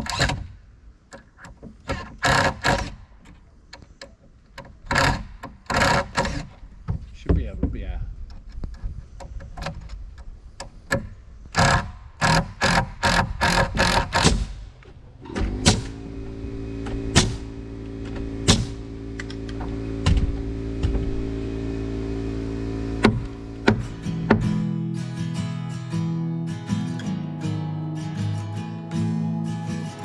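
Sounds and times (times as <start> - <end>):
nails driven into lumber: 0.0 - 7.1, 8.3 - 16.0, 16.8 - 17.5, 18.1 - 19.4, 23.0 - 24.6
steady machine hum: 15.2 - 24.9.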